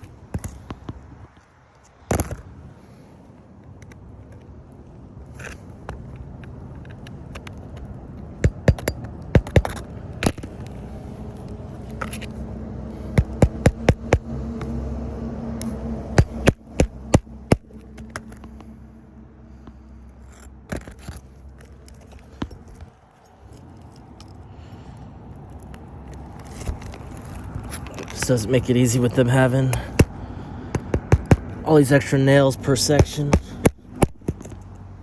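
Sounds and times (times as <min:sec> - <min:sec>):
hammer driving nails into shingles: 0:08.4 - 0:10.4, 0:30.7 - 0:31.5, 0:32.8 - 0:34.6.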